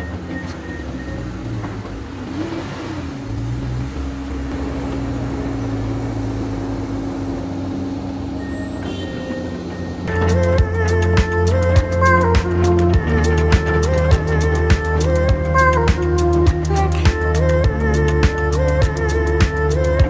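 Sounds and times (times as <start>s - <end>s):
heavy diesel engine running: 0.0s - 20.0s
music with drum beats: 10.1s - 20.0s.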